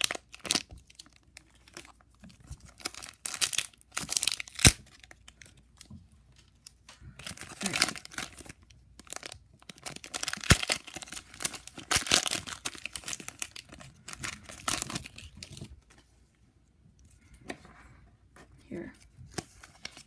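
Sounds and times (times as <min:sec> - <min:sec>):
foil wrapper crinkling and tearing: 0:00.0 - 0:05.8, 0:06.4 - 0:15.7.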